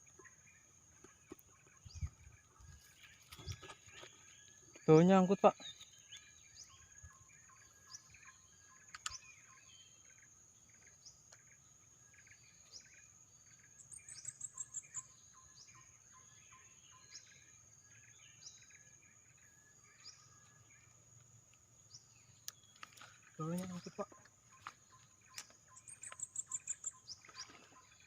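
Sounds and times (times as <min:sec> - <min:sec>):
birds chirping: 0:00.0 - 0:28.0.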